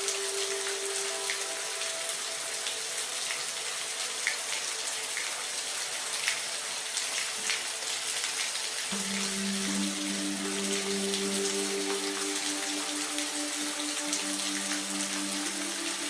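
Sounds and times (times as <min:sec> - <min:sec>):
steady rain hiss: 0:00.0 - 0:16.0
raindrops ticking: 0:08.4 - 0:16.0.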